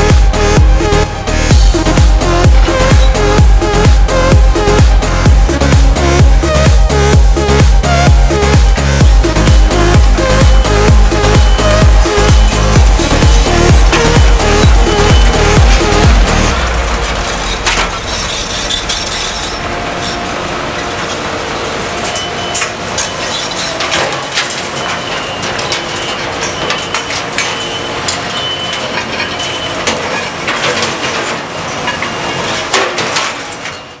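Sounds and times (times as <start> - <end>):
demolition machinery crushing rubble: 0.0 - 34.0.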